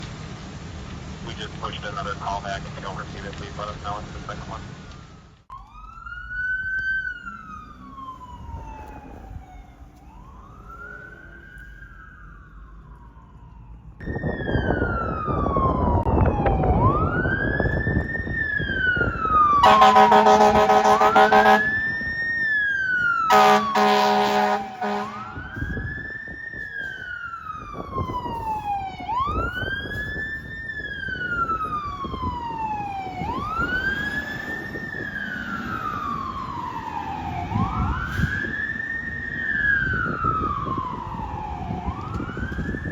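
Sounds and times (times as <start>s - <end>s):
fire engine rumble: 0.0s - 42.9s
wail sirens: 1.3s - 42.9s
air horn blasts: 19.6s - 21.9s, 23.2s - 25.8s.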